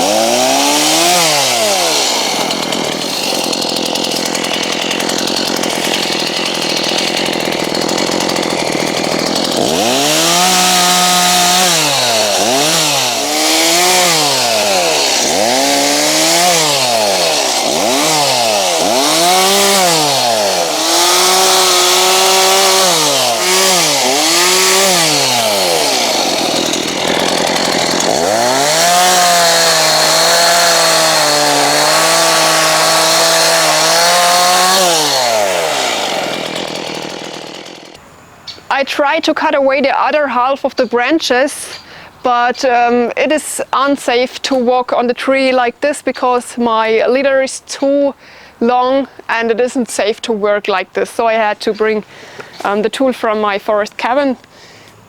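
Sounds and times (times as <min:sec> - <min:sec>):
chainsaw cutting wood: 0:00.0 - 0:38.0, 0:41.3 - 0:55.0.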